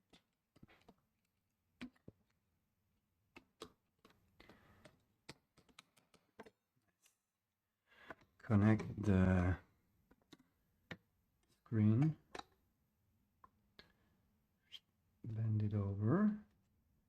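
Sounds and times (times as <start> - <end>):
faint clicks and taps of plastic parts: 0.0 - 2.5, 3.2 - 7.2, 7.9 - 12.7, 13.4 - 14.2.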